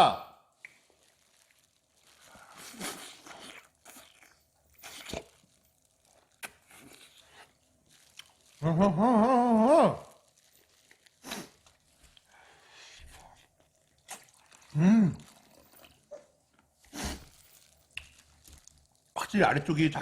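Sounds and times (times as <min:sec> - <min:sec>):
crunching and chewing food: 0:00.5 - 0:19.4
person humming mmm: 0:14.7 - 0:15.2.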